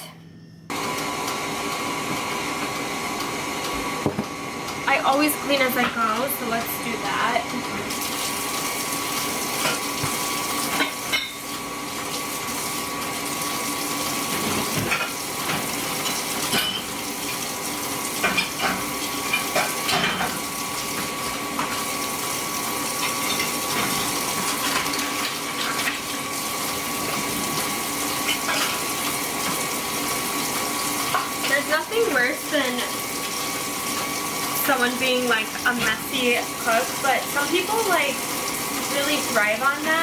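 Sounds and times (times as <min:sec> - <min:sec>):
clinks of bowls and utensils: 0:10.6 - 0:11.5, 0:14.4 - 0:17.4, 0:18.2 - 0:20.4.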